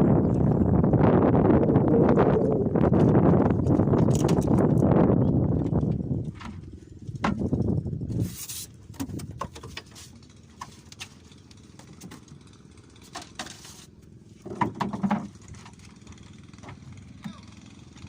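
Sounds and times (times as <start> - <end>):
wind buffeting microphone: 0.0 - 9.4
scattered clicks and knocks: 3.0 - 4.9, 14.4 - 17.7.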